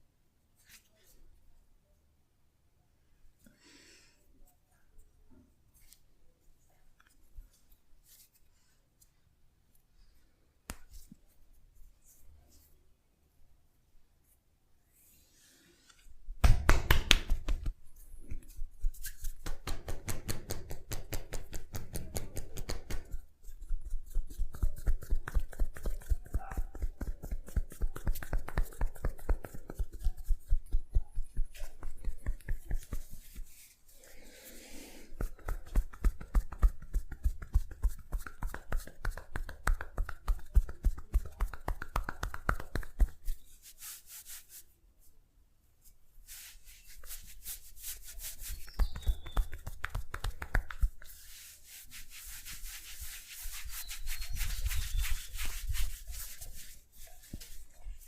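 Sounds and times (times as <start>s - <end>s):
hands rubbing and patting head: 10.6s - 12.7s, 15.9s - 45.2s, 45.8s - 58.0s.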